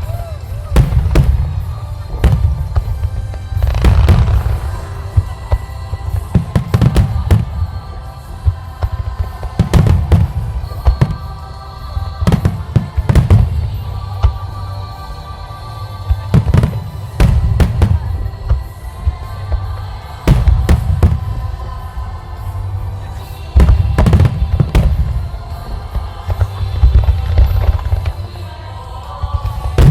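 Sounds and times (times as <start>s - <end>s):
fireworks cracking and booming: 0.0s - 14.5s, 23.6s - 28.4s, 29.4s - 29.9s
music playing: 0.0s - 29.9s.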